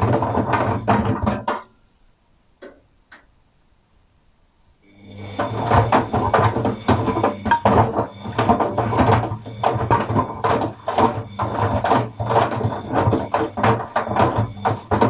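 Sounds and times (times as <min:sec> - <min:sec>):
washing machine motor hum: 0:00.0 - 0:01.6, 0:04.8 - 0:15.0
items clattering in washing machine drum: 0:00.0 - 0:01.8, 0:05.3 - 0:15.0.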